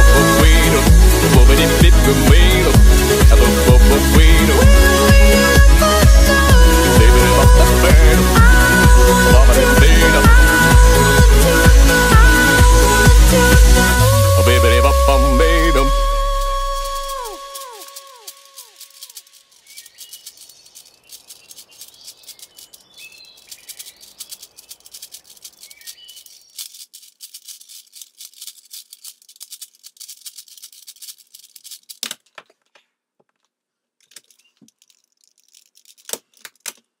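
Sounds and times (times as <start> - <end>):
puzzle cube clicking: 16.2 - 32.5, 34.0 - 37.0.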